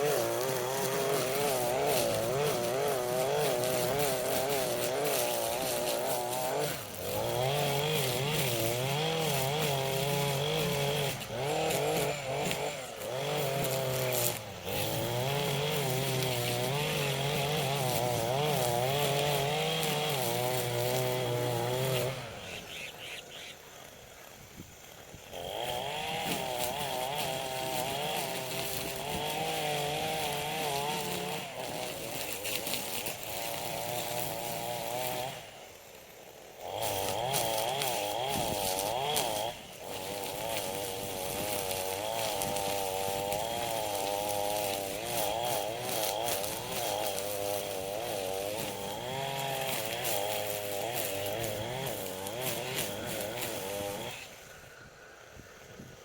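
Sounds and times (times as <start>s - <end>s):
chainsaw cutting: 0.0s - 56.0s.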